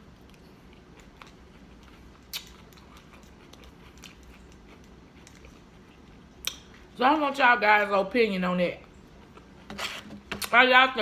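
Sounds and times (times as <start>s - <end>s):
person chewing food: 0.0s - 7.0s, 8.8s - 9.7s.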